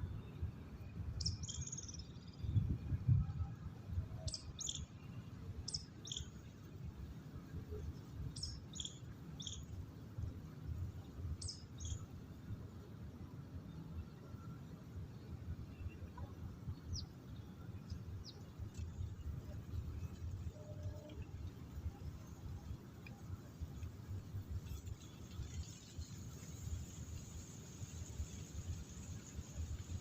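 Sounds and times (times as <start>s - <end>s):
steady low rumble: 0.0s - 30.0s
bird chirping: 1.2s - 2.6s, 4.2s - 6.4s, 8.4s - 9.7s.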